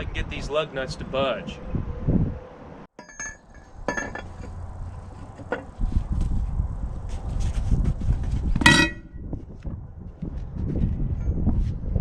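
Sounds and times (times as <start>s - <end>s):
low rumbling noise: 1.0s - 12.0s
loud ringing metal clank: 3.0s - 4.5s, 8.6s - 9.2s
lug wrench clinking on lug nuts: 3.0s - 4.6s.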